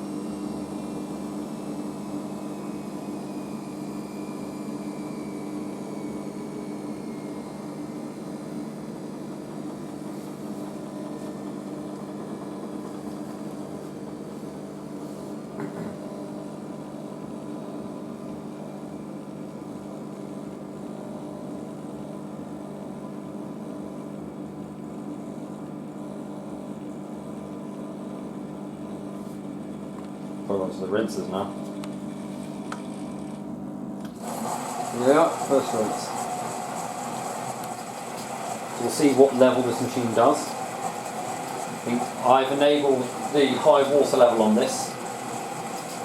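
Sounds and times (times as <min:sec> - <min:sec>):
washing machine spinning: 0:00.0 - 0:46.0
brief knock: 0:15.6 - 0:16.0.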